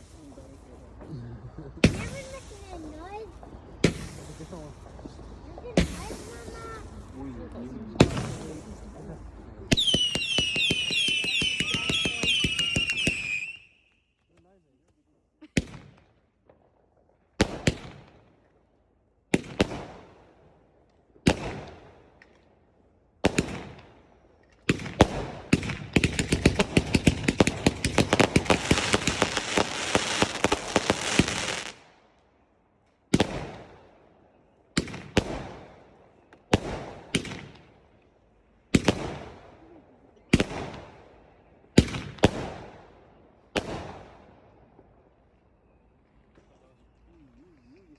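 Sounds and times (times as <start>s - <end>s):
firework crackling: 0.0s - 1.1s, 1.8s - 13.8s, 24.7s - 31.9s
firework bangs echoing: 1.8s - 7.2s, 8.0s - 9.0s, 9.7s - 13.6s, 17.4s - 18.2s, 19.3s - 20.3s, 21.2s - 22.1s, 23.2s - 24.0s, 24.7s - 31.8s, 33.1s - 33.9s, 34.8s - 37.8s, 38.7s - 39.5s, 40.3s - 41.1s, 41.7s - 44.3s.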